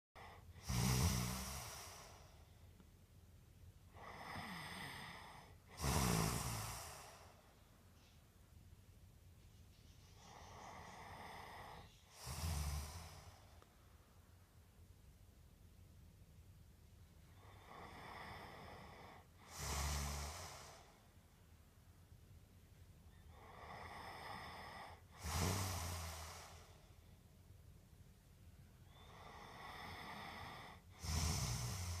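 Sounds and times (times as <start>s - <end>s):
person snoring: 0.2s - 2.5s, 3.9s - 7.5s, 10.2s - 13.6s, 17.4s - 21.0s, 23.2s - 26.9s, 28.9s - 32.0s.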